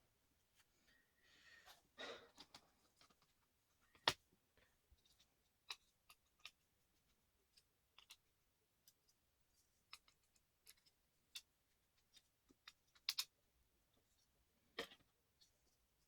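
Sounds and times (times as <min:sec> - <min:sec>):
small clicks and taps of tools: 0:09.8 - 0:13.3.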